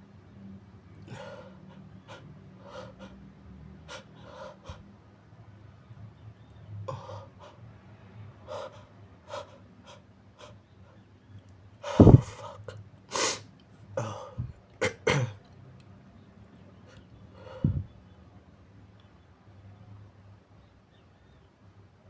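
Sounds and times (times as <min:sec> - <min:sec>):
person sniffing: 0:11.8 - 0:15.0
person sneezing: 0:11.9 - 0:13.4.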